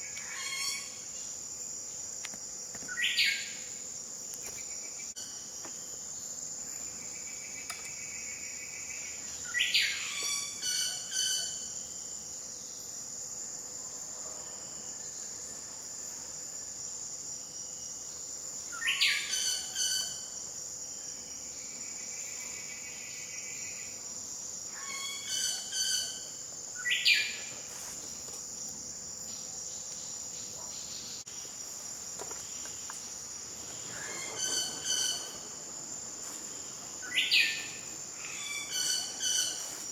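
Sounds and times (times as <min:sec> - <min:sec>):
high-pitched insect drone: 0:00.0 - 0:01.4, 0:18.6 - 0:28.0, 0:29.3 - 0:39.9.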